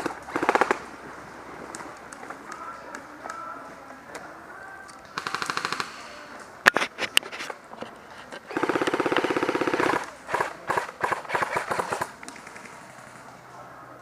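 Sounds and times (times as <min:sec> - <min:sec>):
airsoft gun firing: 0:00.0 - 0:00.9, 0:05.2 - 0:06.2, 0:08.5 - 0:13.2.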